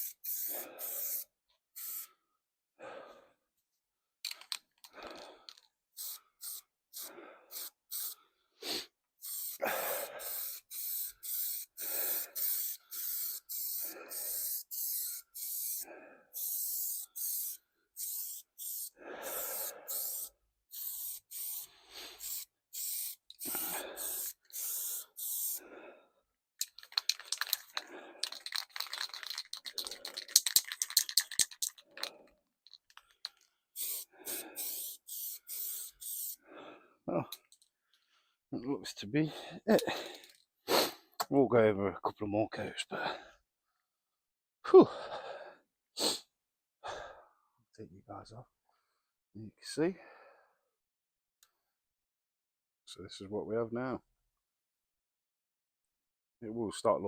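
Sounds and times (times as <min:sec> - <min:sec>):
aerosol can spraying: 0:00.0 - 0:02.1, 0:06.0 - 0:25.6, 0:26.6 - 0:32.1, 0:33.3 - 0:36.4
spray can being shaken: 0:00.0 - 0:02.1, 0:04.3 - 0:08.2, 0:09.2 - 0:15.8, 0:16.4 - 0:25.6, 0:26.6 - 0:36.4
breathing: 0:00.5 - 0:01.2, 0:01.9 - 0:03.5, 0:04.8 - 0:09.0, 0:09.6 - 0:11.0, 0:11.8 - 0:14.8, 0:15.4 - 0:17.6, 0:19.0 - 0:20.4, 0:21.0 - 0:22.4, 0:23.0 - 0:26.2, 0:27.1 - 0:28.5, 0:33.0 - 0:37.0, 0:37.7 - 0:38.4, 0:39.3 - 0:41.2, 0:43.0 - 0:43.8, 0:44.9 - 0:45.7, 0:46.8 - 0:47.5, 0:48.6 - 0:49.2, 0:50.0 - 0:50.7.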